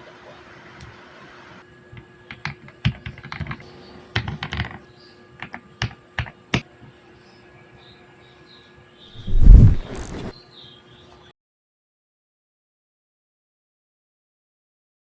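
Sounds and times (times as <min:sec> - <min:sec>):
mechanical keyboard typing: 0:02.4 - 0:03.6, 0:04.2 - 0:04.8.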